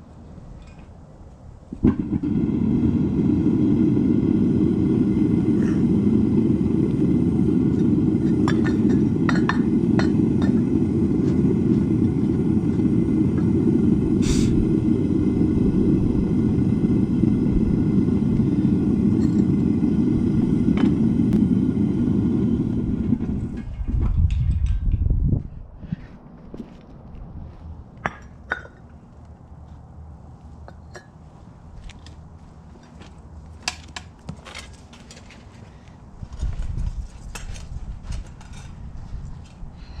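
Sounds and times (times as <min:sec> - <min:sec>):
propane burner roaring: 0:00.0 - 0:40.0.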